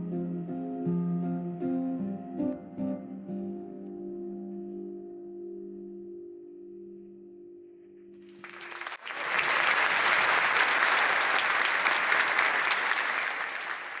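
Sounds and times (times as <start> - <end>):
audience applause: 8.3 - 14.0.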